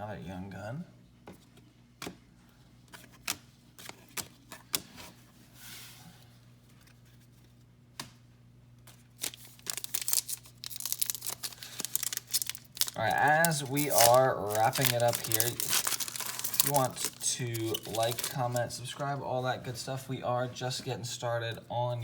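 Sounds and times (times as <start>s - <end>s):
faint electrical hum: 0.0s - 22.0s
foil wrapper crinkling and tearing: 9.0s - 19.0s.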